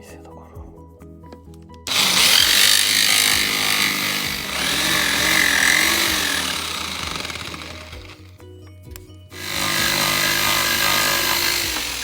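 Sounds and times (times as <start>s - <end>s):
power saw cutting wood: 1.9s - 8.3s, 9.4s - 12.0s.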